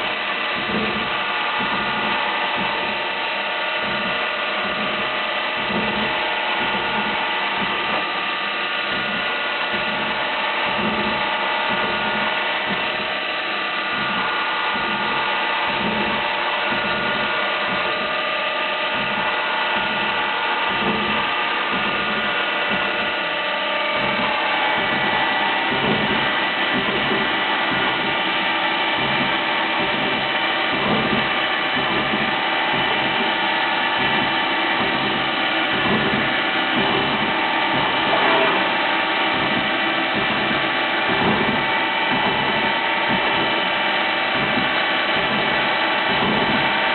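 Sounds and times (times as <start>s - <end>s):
low pulsing: 0.0s - 46.7s
milling machine cutter whine: 0.0s - 46.9s.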